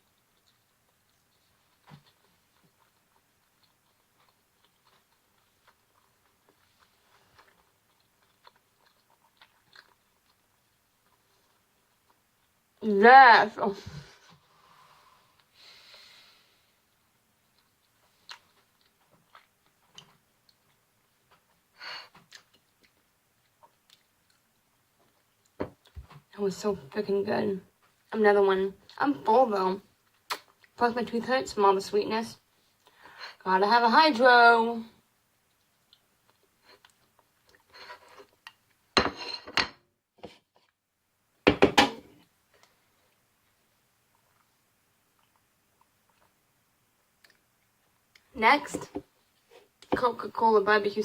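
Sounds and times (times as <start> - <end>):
person chewing: 0.0 - 12.8, 16.8 - 26.2, 30.0 - 30.8, 35.3 - 39.0, 42.5 - 48.3
dishes and cutlery clinking: 39.0 - 39.8.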